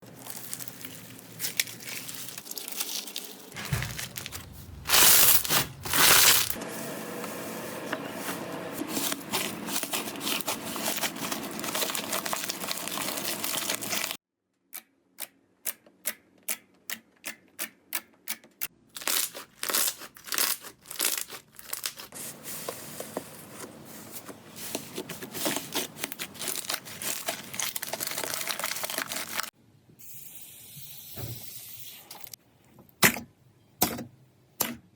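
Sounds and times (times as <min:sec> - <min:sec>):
slime crackling: 0:00.1 - 0:06.6, 0:09.3 - 0:14.2, 0:25.3 - 0:29.5.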